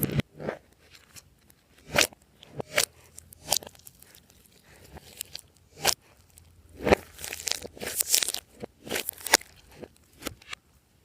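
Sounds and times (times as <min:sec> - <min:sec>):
slime squeezed by hand: 0:01.8 - 0:10.0.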